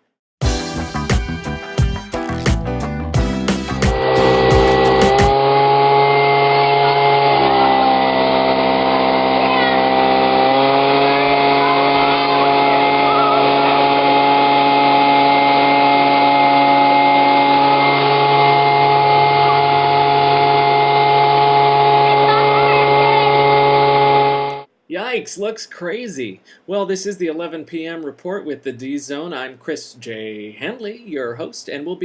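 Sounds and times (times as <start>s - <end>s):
small motor whining: 4.4s - 24.7s.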